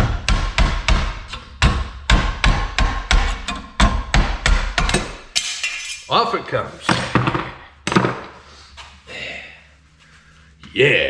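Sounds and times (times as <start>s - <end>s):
hammer striking metal radiator: 0.0s - 6.0s.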